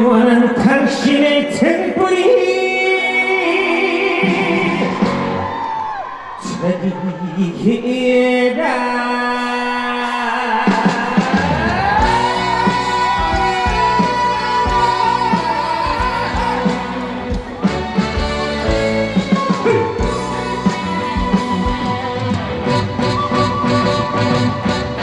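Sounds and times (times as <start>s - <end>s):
trot song with band: 0.0s - 6.0s, 9.3s - 25.0s
steady drum beat: 10.7s - 25.0s.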